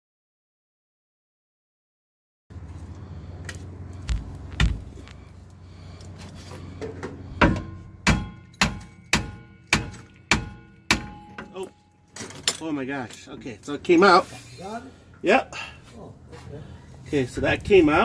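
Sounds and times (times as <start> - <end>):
hammer striking metal: 7.4 - 11.8.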